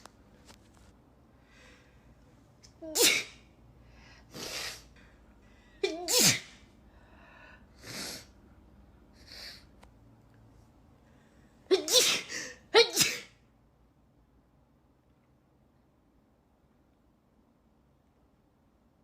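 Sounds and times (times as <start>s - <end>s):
woman sneezing: 2.8s - 3.5s, 5.8s - 6.6s, 11.7s - 13.4s.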